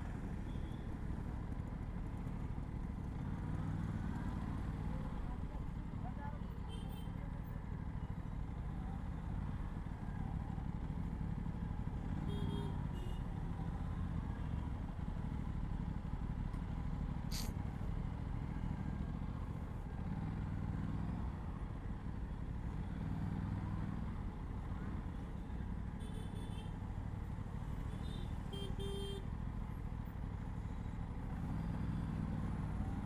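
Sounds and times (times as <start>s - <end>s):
city traffic: 0.0s - 33.0s
sharp click: 17.3s - 17.5s.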